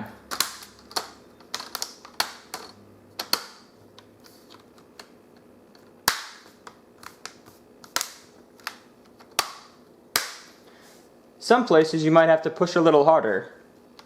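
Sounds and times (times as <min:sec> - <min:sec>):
plastic clips snapping: 0:00.3 - 0:03.6.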